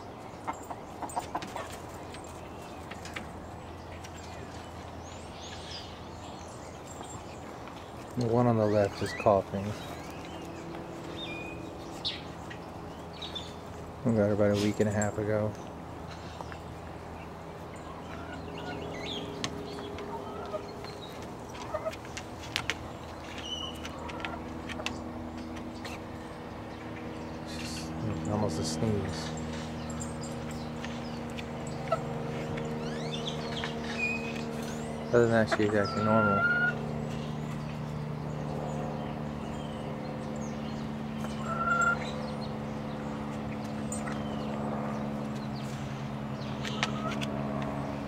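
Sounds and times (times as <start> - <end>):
hens clucking: 0.4 - 2.0, 19.8 - 22.7, 23.7 - 24.9, 34.6 - 36.8, 41.2 - 42.0
hens clucking softly: 35.3 - 36.8.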